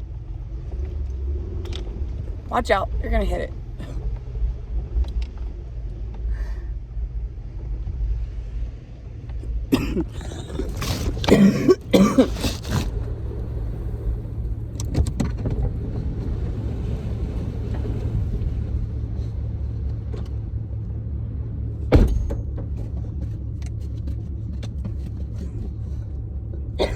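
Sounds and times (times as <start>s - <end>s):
vehicle cabin rumble: 0.0s - 26.9s
loud short noises: 9.8s - 12.9s.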